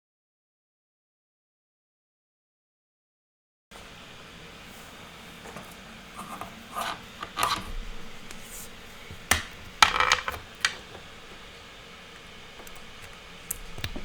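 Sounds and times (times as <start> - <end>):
short scraping rubs: 4.7 - 9.0
objects clacking on a desk: 5.4 - 7.8, 9.2 - 11.1.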